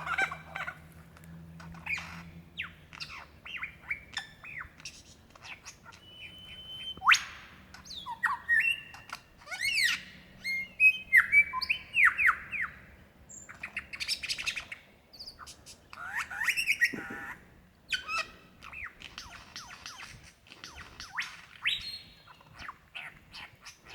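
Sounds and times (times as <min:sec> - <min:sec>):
lyrebird singing mimicked calls: 0:01.6 - 0:23.9.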